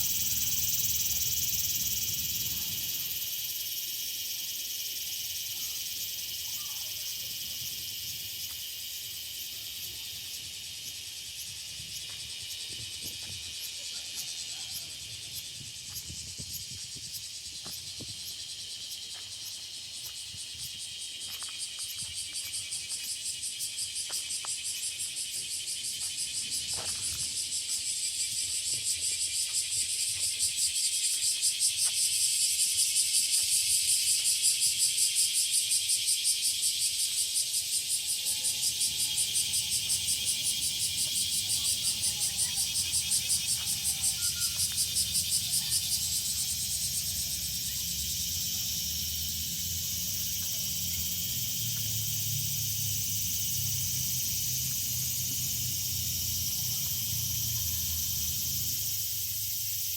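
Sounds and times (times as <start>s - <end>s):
cicadas buzzing in chorus: 0.0s - 59.9s
rapid pulsing insect call: 0.0s - 59.9s.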